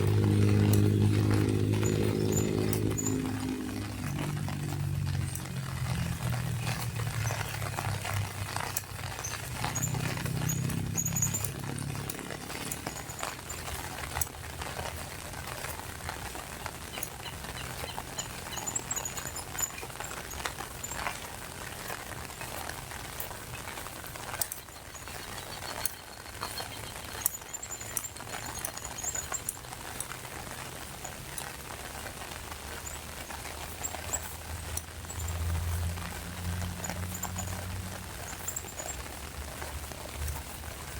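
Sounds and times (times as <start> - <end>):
low hum: 0.0 - 22.3
small birds chirping: 0.0 - 40.8
drops pattering: 0.0 - 40.9
rain falling: 0.0 - 40.9.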